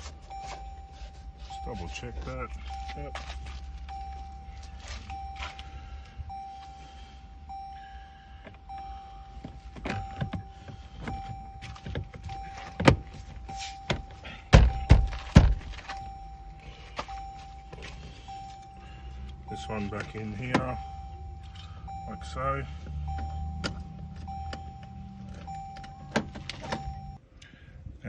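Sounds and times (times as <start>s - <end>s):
steady high tone: 0.0s - 27.2s
sharp thunks: 9.4s - 16.2s.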